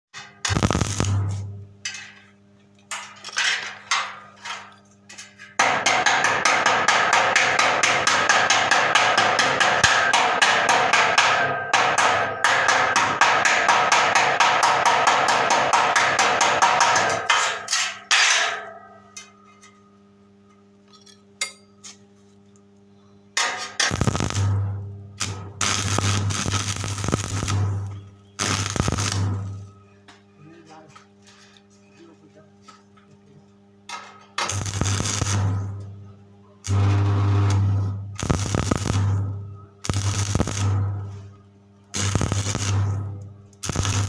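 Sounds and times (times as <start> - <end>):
welding arc crackling: 0.2 - 1.6, 23.8 - 29.7, 34.4 - 35.9, 36.6 - 41.2, 41.8 - 44.0
welding transformer hum: 0.2 - 44.0.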